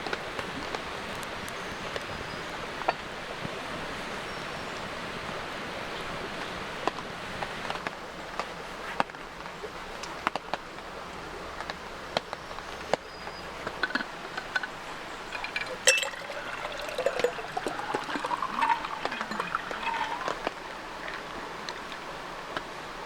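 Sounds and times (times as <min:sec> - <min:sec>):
steady rain falling: 0:00.0 - 0:15.3, 0:16.5 - 0:23.0
drips ticking: 0:13.8 - 0:21.9.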